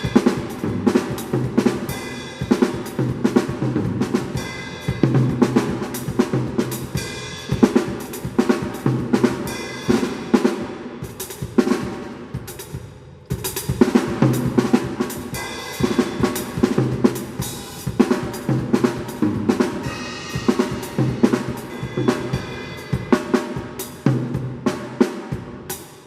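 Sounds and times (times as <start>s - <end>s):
drum kit groove with fills: 0.0s - 26.0s
cymbal crash: 4.2s - 8.4s, 15.2s - 18.7s, 19.7s - 24.0s.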